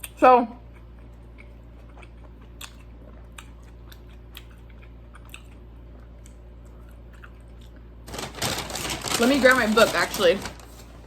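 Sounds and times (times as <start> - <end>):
wet mouth clicks chewing: 0.8 - 7.9.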